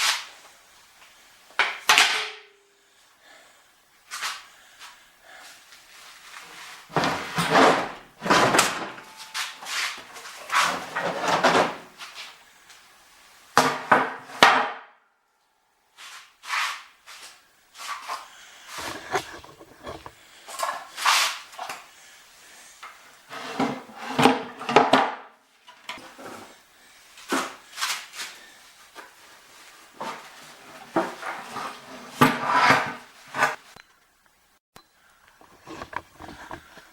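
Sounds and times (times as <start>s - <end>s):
metal and wooden pieces clanking: 6.9s - 9.5s, 18.8s - 20.8s.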